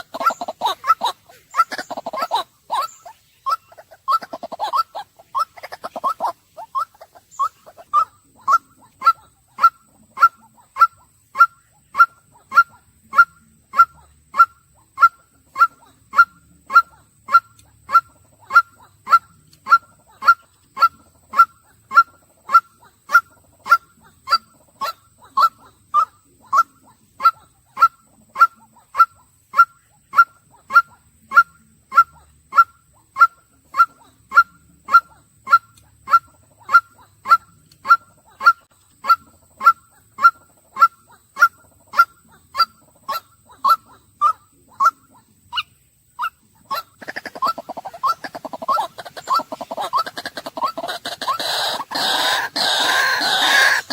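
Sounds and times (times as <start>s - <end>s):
bird calling repeated short notes: 47.0s - 53.9s.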